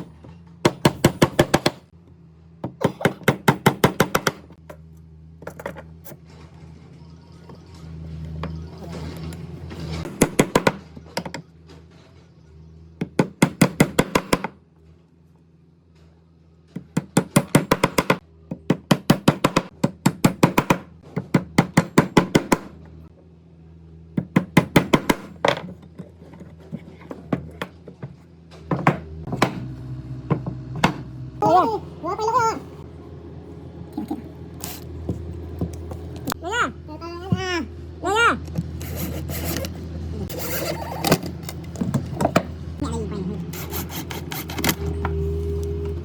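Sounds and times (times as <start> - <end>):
steady low hum: 17.7 - 46.0.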